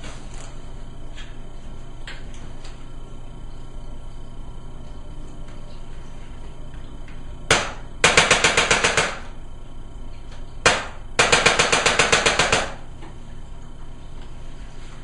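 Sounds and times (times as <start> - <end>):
rapid mechanical clicks: 7.5 - 9.2, 10.7 - 12.8.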